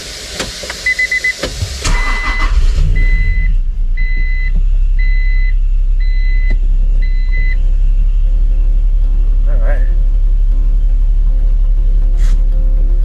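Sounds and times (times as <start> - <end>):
car engine cranking and idling: 0.0 - 13.0.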